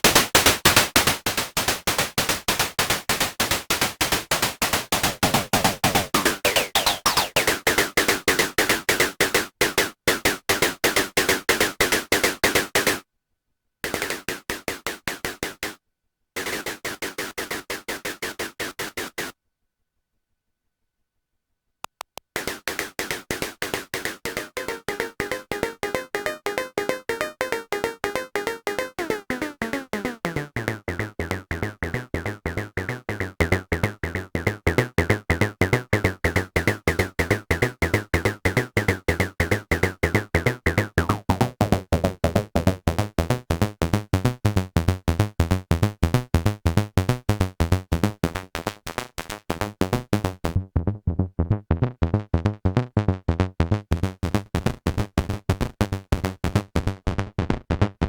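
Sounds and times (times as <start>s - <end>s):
synthesizer sequencer pattern: 4.4s - 7.9s, 24.4s - 54.5s.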